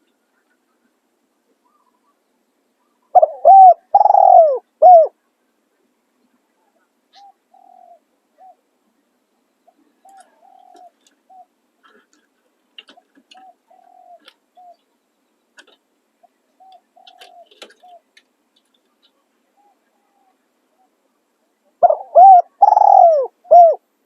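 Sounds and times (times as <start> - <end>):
faint small-bird chirps: 1.6 - 3.2, 6.2 - 8.6
dove cooing: 2.8 - 5.2, 6.6 - 8.7, 9.7 - 14.9, 15.6 - 18.1, 21.7 - 23.9.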